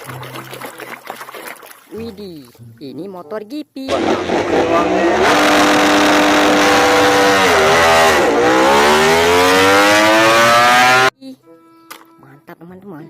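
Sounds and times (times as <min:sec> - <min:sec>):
racing engine revving: 0:03.9 - 0:11.1.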